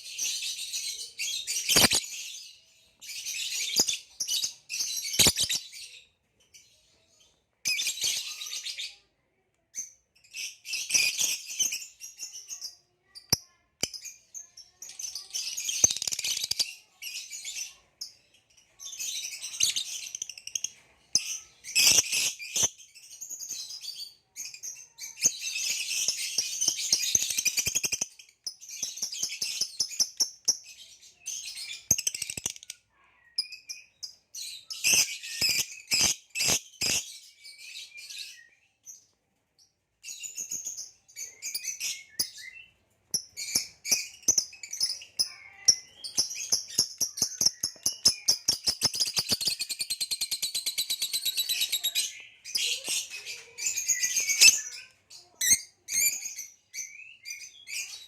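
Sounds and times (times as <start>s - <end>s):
bird chattering chirps: 0.7s - 2.3s, 3.2s - 5.8s, 31.5s - 34.0s, 40.3s - 56.6s.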